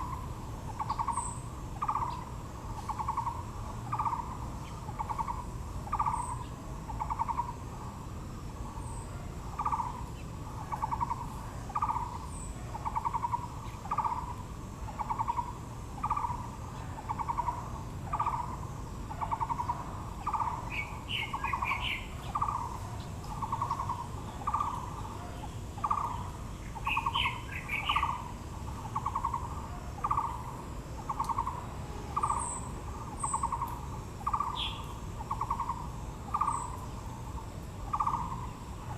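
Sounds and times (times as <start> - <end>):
bird trilling call: 0.0 - 2.3, 2.9 - 7.6, 10.7 - 14.3, 14.9 - 16.4, 17.1 - 18.6, 19.2 - 25.2, 25.8 - 30.5, 31.1 - 31.6, 32.2 - 36.8, 37.9 - 38.6
birds chirping: 0.0 - 7.7, 8.7 - 38.9.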